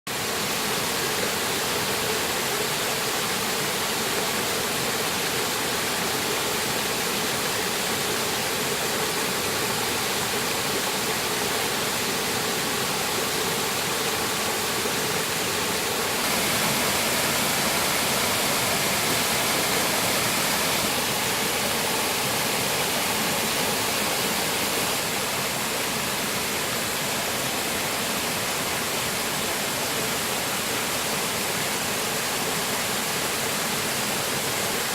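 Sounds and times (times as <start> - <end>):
stream water rushing: 0.1 - 34.9.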